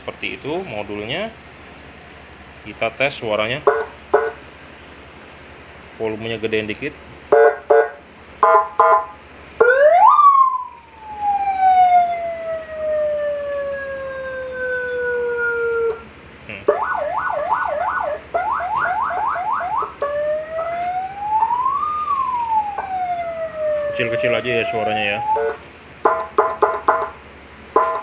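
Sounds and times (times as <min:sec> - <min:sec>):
siren fast yelp: 0:08.4 - 0:16.1, 0:16.7 - 0:27.1
siren wail: 0:08.4 - 0:27.2, 0:27.8 - 0:28.0
short beeps: 0:27.8 - 0:28.0.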